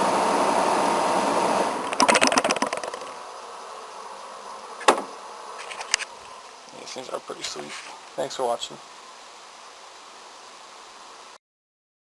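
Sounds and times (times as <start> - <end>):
faint hum: 0.0 - 11.4
window air conditioner running: 0.0 - 11.4
rapid clicking and rattling: 1.9 - 3.2.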